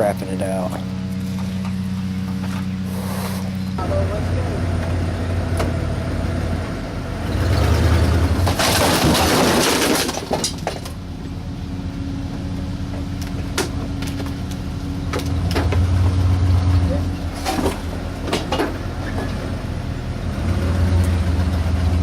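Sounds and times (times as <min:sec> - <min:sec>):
truck engine running: 0:00.0 - 0:22.0
loud noisy crash: 0:08.4 - 0:10.6.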